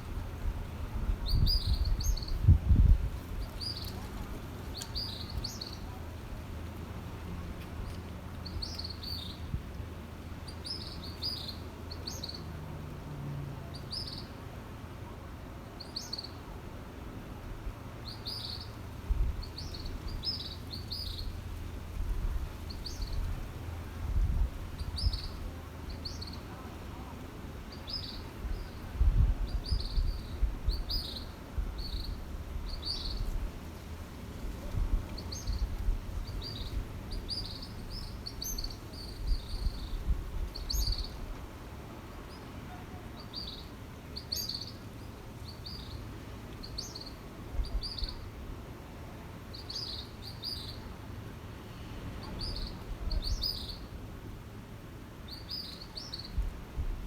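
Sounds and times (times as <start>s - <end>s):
small birds chirping: 1.0s - 6.2s, 7.7s - 9.6s, 10.4s - 12.5s, 18.0s - 23.5s, 24.2s - 33.6s, 34.7s - 41.3s, 42.1s - 48.3s, 49.5s - 50.9s, 52.2s - 54.0s, 55.3s - 56.5s.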